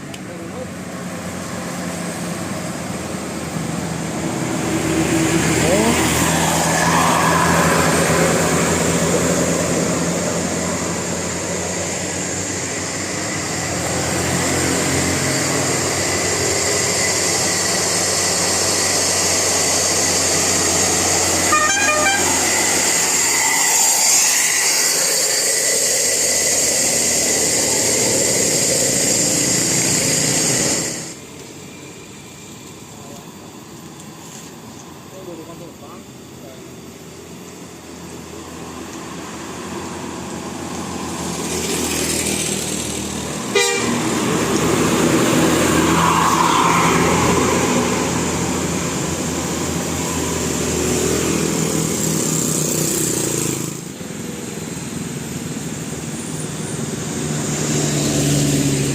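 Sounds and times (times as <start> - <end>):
bus engine running: 0.0 - 58.9
musical air horn: 21.4 - 22.7, 43.5 - 44.2.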